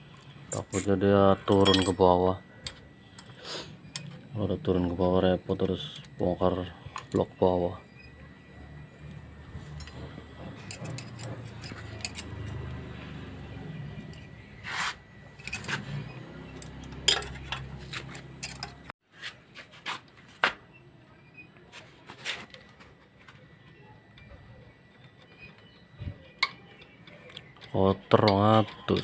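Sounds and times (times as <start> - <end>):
low background hum: 0.0 - 19.0, 20.0 - 29.0
metal tools and parts clinking: 0.5 - 4.2, 9.6 - 12.8, 15.2 - 18.9.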